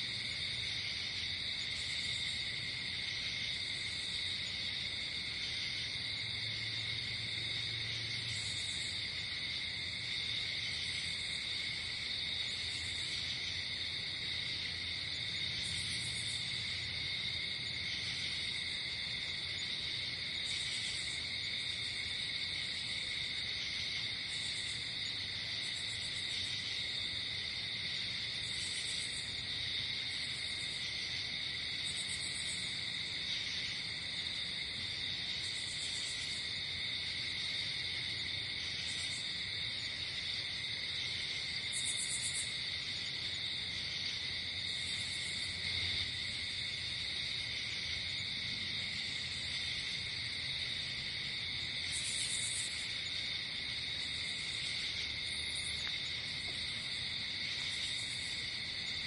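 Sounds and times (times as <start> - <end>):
crickets chirping: 0.0 - 59.0
high-pitched insect trills: 35.1 - 59.0.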